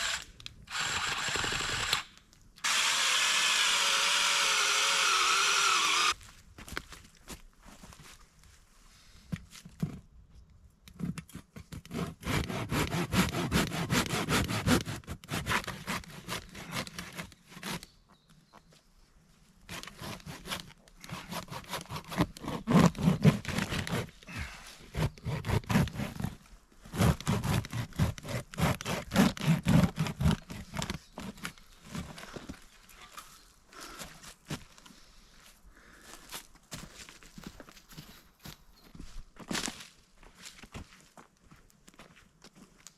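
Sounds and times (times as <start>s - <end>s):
hand sawing wood: 2.6s - 6.2s, 11.3s - 17.9s, 19.7s - 32.4s.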